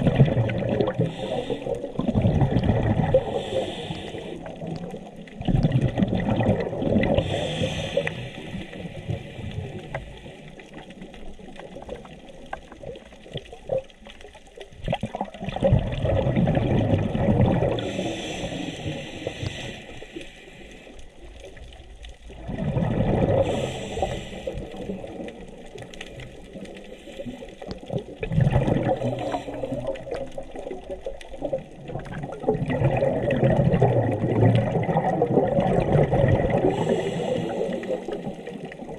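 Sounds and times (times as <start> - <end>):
bubbles gurgling underwater: 0.0 - 20.2, 21.1 - 38.9
diver breathing through regulator: 0.9 - 2.0, 3.2 - 4.6, 7.1 - 10.6, 17.7 - 21.1, 23.3 - 25.2, 28.9 - 30.1, 36.5 - 38.6.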